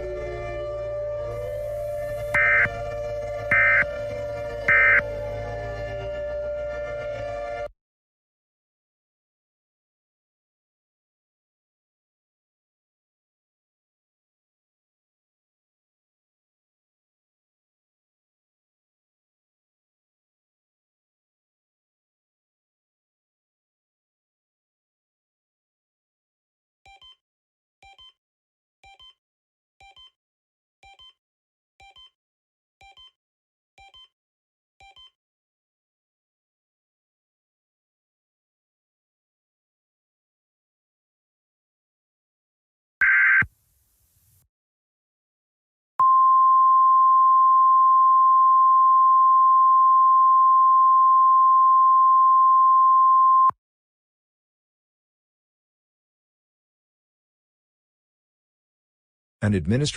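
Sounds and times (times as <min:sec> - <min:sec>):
steady alert beep: 0:02.4 - 0:02.7, 0:03.5 - 0:03.9, 0:04.7 - 0:05.0.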